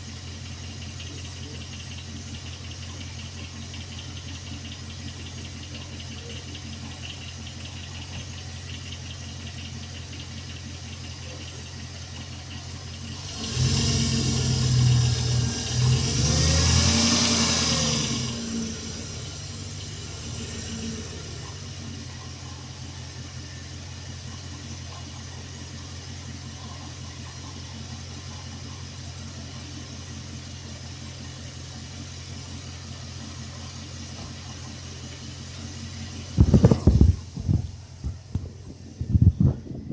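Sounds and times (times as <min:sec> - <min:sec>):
car engine revving and idling: 0:00.0 - 0:39.9
loud sharp thumps: 0:36.3 - 0:39.9.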